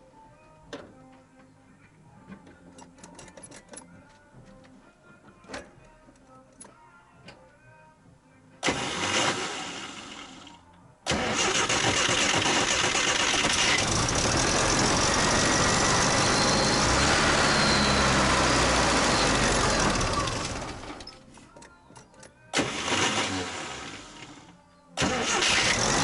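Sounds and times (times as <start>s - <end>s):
engine starter cranking: 8.6s - 10.5s, 11.1s - 21.2s, 22.5s - 26.0s.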